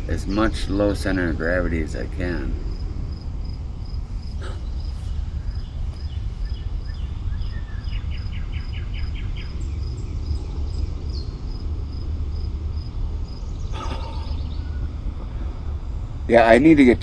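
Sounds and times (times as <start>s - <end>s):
insect pulsing chirp: 0.0s - 16.9s
low rumble on microphone: 0.0s - 17.0s
bird chirping: 4.2s - 12.0s, 13.2s - 15.6s.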